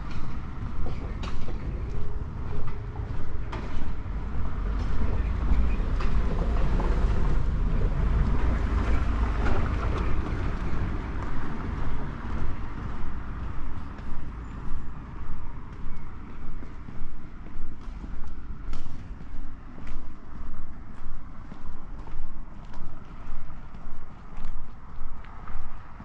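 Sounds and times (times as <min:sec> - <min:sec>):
large vehicle rumbling past: 0:01.5 - 0:13.4
soft footsteps: 0:09.5 - 0:26.0.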